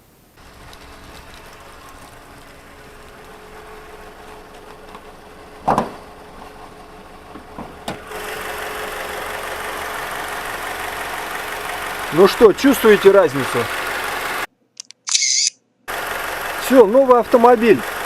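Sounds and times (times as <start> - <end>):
car engine idling: 0.4 - 14.5, 15.9 - 18.0
loud thump: 5.6 - 6.0
sharp click: 14.8 - 15.6.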